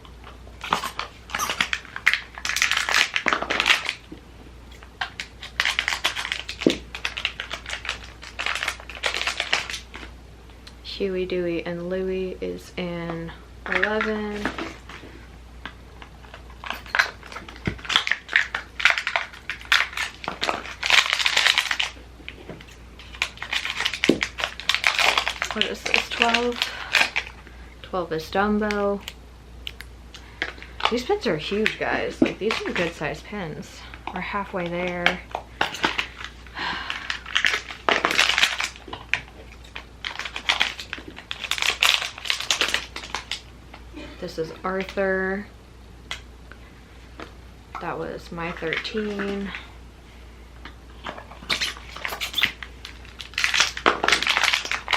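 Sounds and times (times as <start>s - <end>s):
cardboard packaging crinkling: 0.6s - 10.1s, 16.1s - 27.6s, 30.2s - 33.2s, 34.0s - 43.5s, 51.0s - 54.9s.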